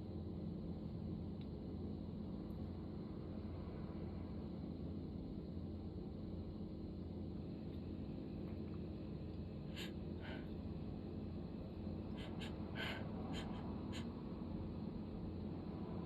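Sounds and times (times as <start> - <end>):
steady low hum: 0.0 - 16.0
person sniffling: 9.7 - 10.5, 12.2 - 14.1.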